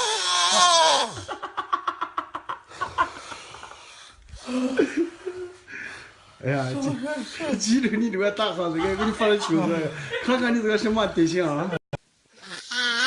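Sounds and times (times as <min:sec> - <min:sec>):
person wailing: 0:00.0 - 0:01.3.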